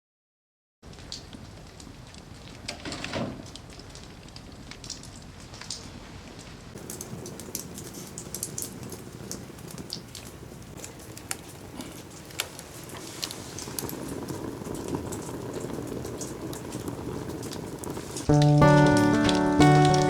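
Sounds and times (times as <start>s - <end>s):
fire crackling and popping: 0.8s - 20.0s
low rushing of flame: 6.8s - 20.0s
loud music: 18.3s - 20.0s.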